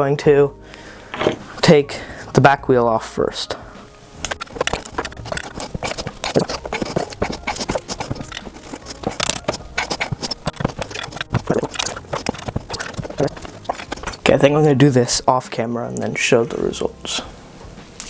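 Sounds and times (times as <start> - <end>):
hand tools clicking on metal: 4.2 - 14.7.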